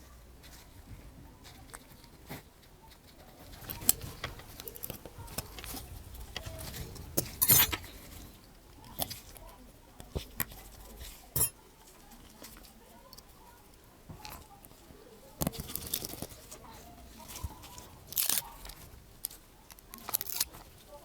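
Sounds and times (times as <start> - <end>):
tools clicking and scraping on workbench: 3.0 - 9.4, 10.0 - 11.6.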